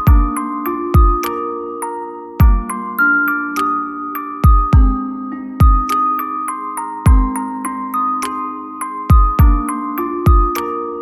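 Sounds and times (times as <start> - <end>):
bell-like mallet notes: 0.0 - 11.0
soft background music: 0.0 - 11.0
deep kick drum hit: 4.5 - 5.0.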